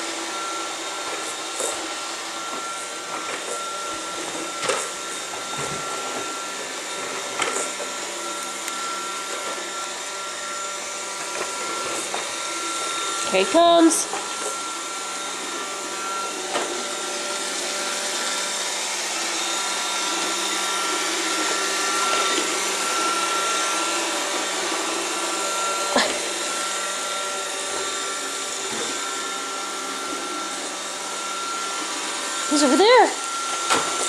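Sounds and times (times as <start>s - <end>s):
robot vacuum whirring: 0.1s - 34.0s.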